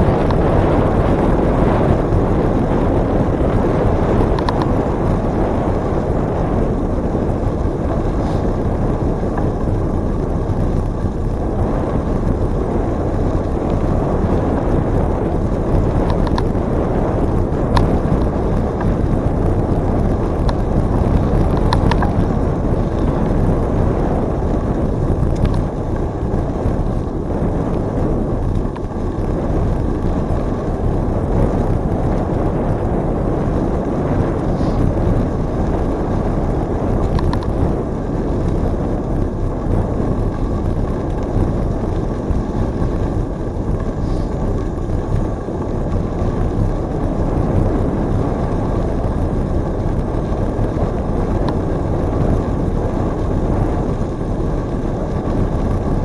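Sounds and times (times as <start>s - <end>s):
wind rumble on microphone: 0.0s - 56.0s.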